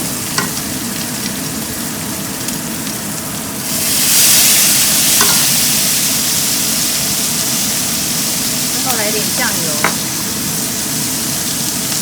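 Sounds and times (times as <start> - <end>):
meat sizzling in a hot pan: 0.0 - 12.0.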